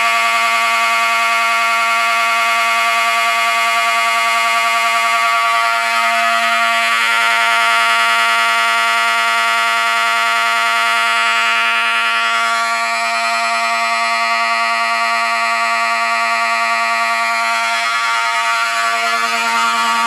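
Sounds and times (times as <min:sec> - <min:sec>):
fire alarm horn: 0:00.0 - 0:20.0.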